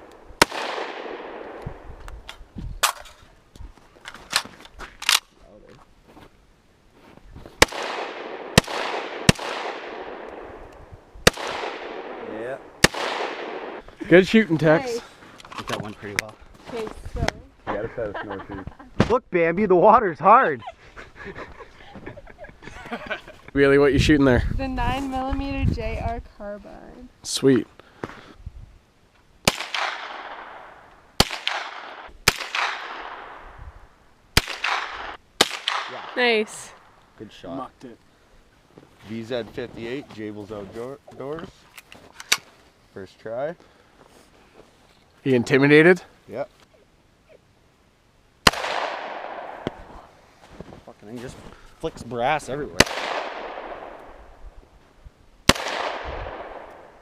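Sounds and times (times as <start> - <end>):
gunshots with echo: 0.4 - 1.6, 7.6 - 10.6, 11.2 - 13.8, 29.5 - 33.4, 34.4 - 36.2, 48.4 - 49.7, 52.8 - 54.1, 55.5 - 57.0.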